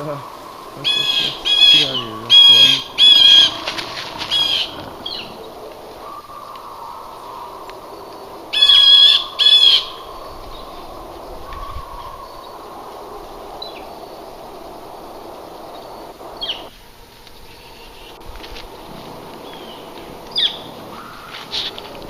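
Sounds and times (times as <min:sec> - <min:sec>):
high bird chirps: 0:00.0 - 0:16.7
wavering animal calls: 0:00.0 - 0:16.7, 0:17.4 - 0:22.0
steady background hiss: 0:00.0 - 0:22.0.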